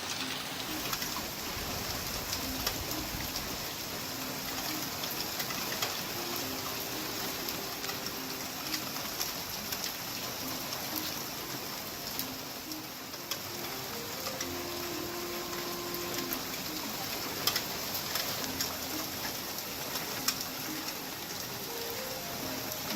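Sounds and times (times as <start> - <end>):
heavy rain: 0.0 - 22.9.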